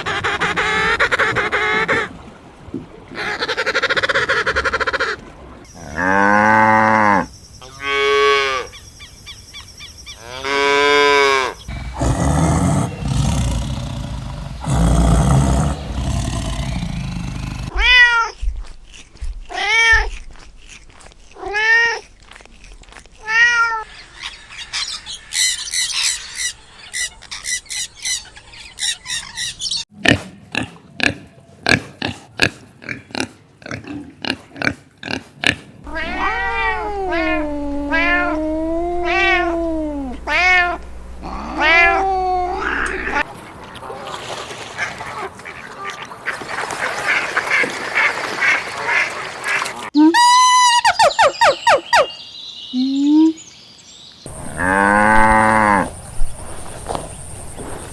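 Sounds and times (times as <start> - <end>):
quavering animal calls: 10.1 - 17.7, 35.9 - 43.3
overlapping animal calls: 10.2 - 17.7, 35.9 - 43.3
wavering animal call: 10.2 - 17.7, 35.9 - 43.2, 50.0 - 52.1.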